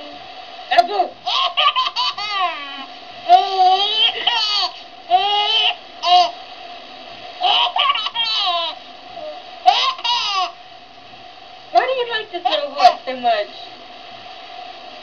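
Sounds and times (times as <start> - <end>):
baby laughing: 1.2 - 6.4, 7.4 - 8.8, 9.7 - 10.6.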